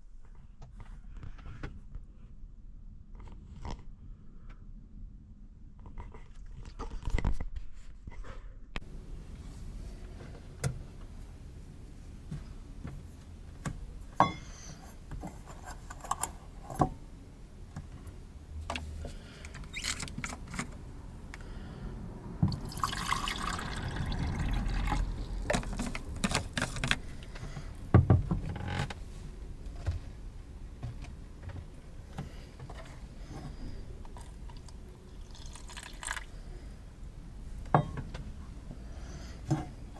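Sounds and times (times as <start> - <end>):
liquid being poured: 22.4 - 27.5, 34.2 - 36.6.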